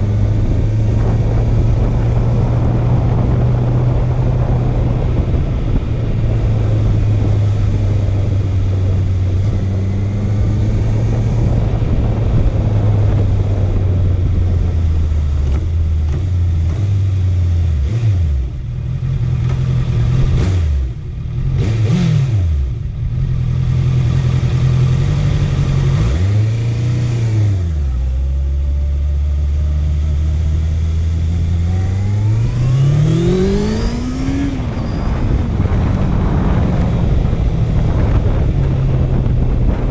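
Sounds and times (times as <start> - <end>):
motorcycle engine revving: 0.0 - 39.9
road and wind noise: 0.0 - 39.9.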